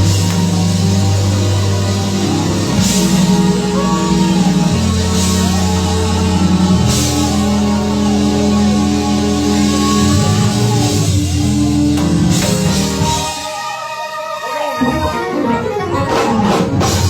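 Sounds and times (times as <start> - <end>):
bass guitar: 0.0 - 13.3
guitar chords: 0.0 - 13.5
drum kit with cymbal crashes: 0.0 - 13.8.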